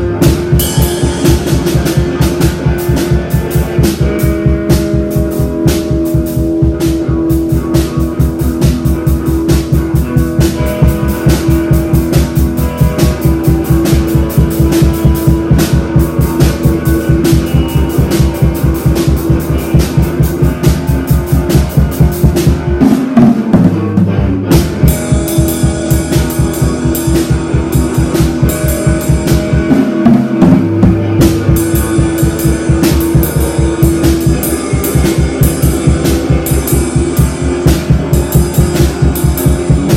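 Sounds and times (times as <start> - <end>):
loud rock music: 0.0 - 39.9.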